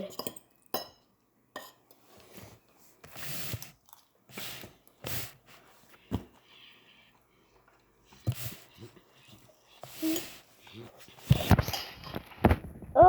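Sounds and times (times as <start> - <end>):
chewing: 3.7 - 4.2.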